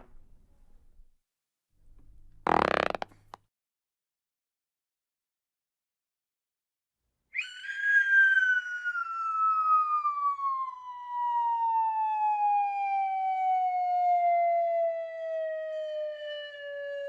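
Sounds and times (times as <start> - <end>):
siren-like tone sliding down: 7.4 - 17.0.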